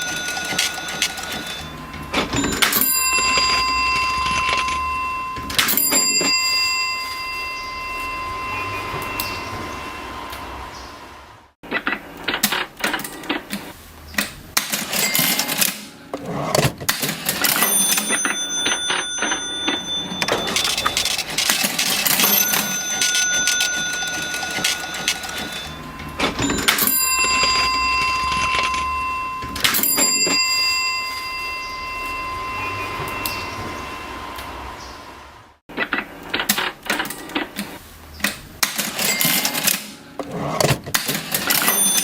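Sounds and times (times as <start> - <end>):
cash register keys clacking: 0.0 - 9.4, 14.6 - 33.4, 38.6 - 42.0
cash register bell ringing: 0.0 - 10.7, 14.6 - 34.9, 38.6 - 42.0.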